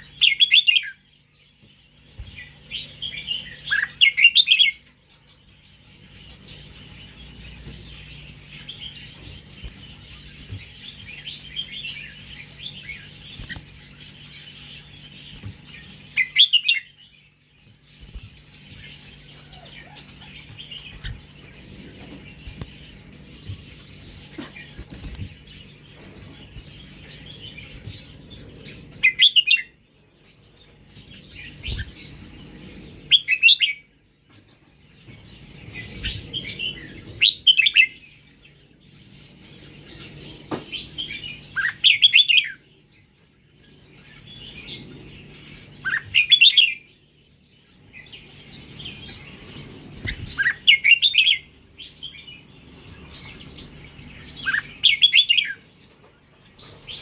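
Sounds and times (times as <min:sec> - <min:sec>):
bulbul singing: 0:00.0 - 0:34.0, 0:34.9 - 0:57.0.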